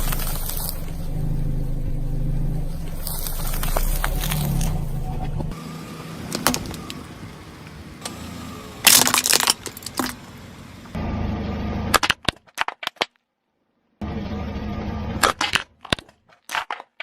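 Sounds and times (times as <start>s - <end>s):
low steady hum: 0.0s - 11.9s
cracks and crunches of crushing: 8.8s - 10.2s, 12.0s - 13.2s, 15.2s - 17.0s.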